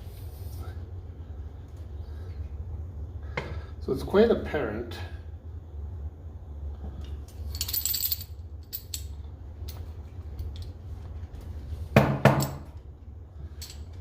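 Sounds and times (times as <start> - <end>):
steady low hum: 0.0 - 14.0
small metal parts clinking: 7.3 - 9.8, 13.5 - 14.0
loud knocks: 12.0 - 12.6.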